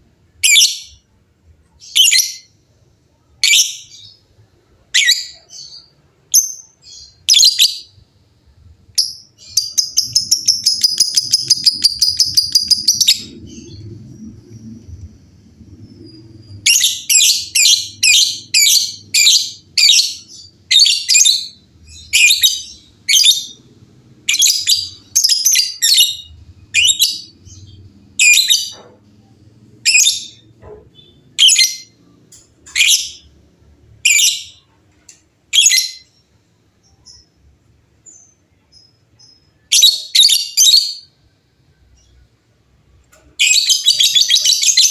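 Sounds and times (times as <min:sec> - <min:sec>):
lovebird chattering trill: 0:09.0 - 0:13.9
lovebird shrill calls: 0:09.4 - 0:13.7.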